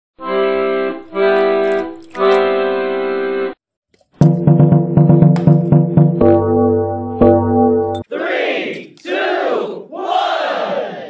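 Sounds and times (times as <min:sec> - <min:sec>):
held keyboard chords: 0:00.2 - 0:03.6, 0:04.2 - 0:08.0.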